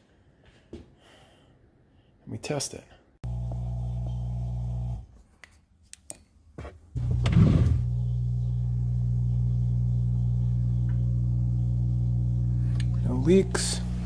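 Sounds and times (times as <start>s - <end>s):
dishwasher motor humming: 3.2s - 5.1s, 7.0s - 14.0s.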